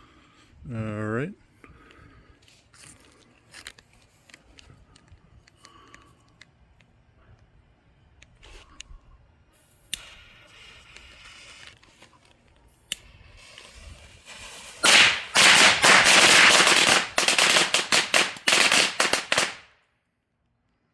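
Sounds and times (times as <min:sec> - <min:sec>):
sharp cracks: 0:12.9 - 0:19.8
firecrackers exploding: 0:13.0 - 0:19.7.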